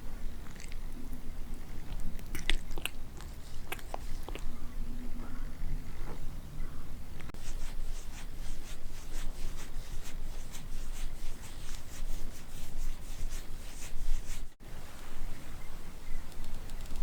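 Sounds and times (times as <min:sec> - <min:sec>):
kitten rasping rubbing strokes: 0:07.4 - 0:14.6.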